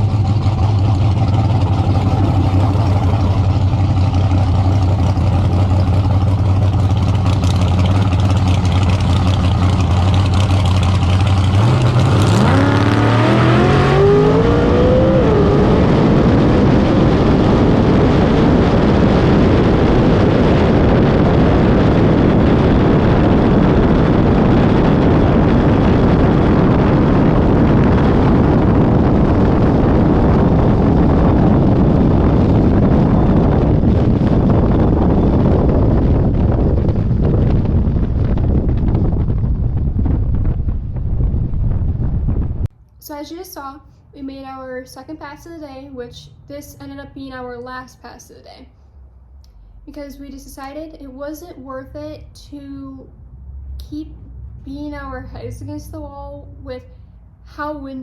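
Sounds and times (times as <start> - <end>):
drag car engine idling and revving: 0.0 - 58.0
wind noise rushing: 11.5 - 42.7.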